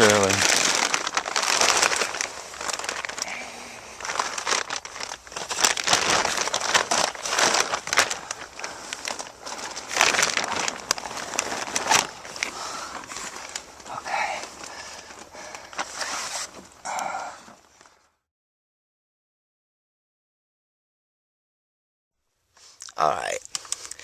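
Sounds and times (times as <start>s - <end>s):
plastic sheeting crinkling: 0.0s - 16.8s, 22.6s - 24.0s.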